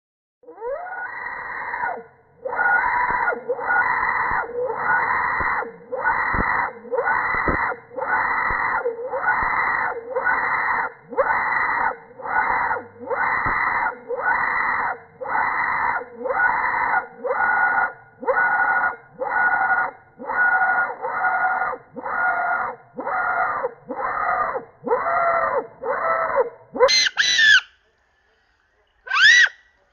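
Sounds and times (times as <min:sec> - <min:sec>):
scream-like animal call: 0:00.4 - 0:27.7, 0:29.1 - 0:29.6
shrill sweeping calls: 0:26.8 - 0:27.8, 0:29.1 - 0:29.6.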